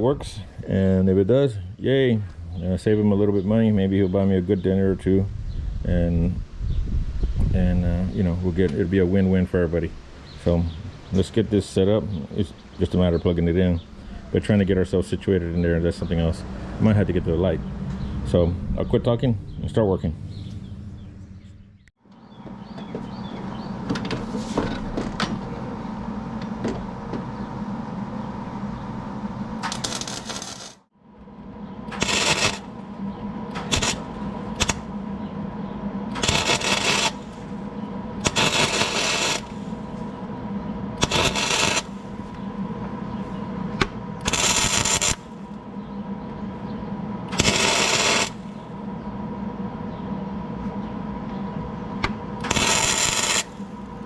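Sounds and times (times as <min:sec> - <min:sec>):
steady welder hum: 0:22.3 - 0:54.0
welder arc crackling: 0:29.6 - 0:30.9, 0:31.8 - 0:35.1, 0:36.1 - 0:40.3, 0:41.0 - 0:42.7, 0:44.2 - 0:45.6, 0:47.3 - 0:48.6, 0:52.4 - 0:54.0.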